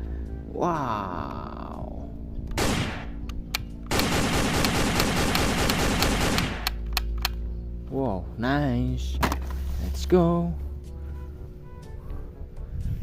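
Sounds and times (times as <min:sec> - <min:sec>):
toy gun rapid fire effect: 0:03.9 - 0:06.6.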